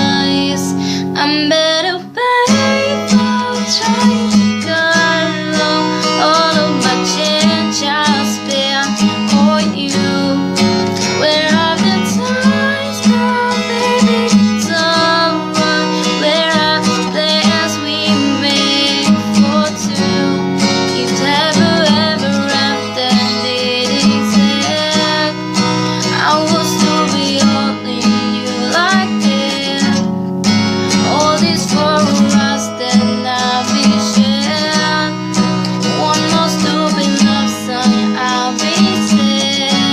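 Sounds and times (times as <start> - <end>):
person singing: 0.0 - 30.1, 30.9 - 39.9
acoustic guitar strumming: 0.0 - 39.9.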